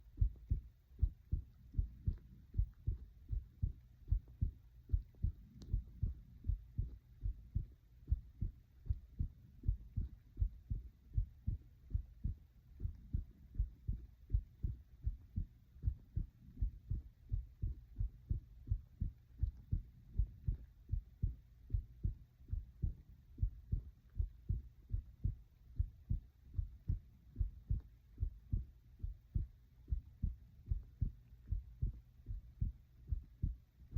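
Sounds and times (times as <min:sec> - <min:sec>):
heart beating: 0:00.0 - 0:33.9.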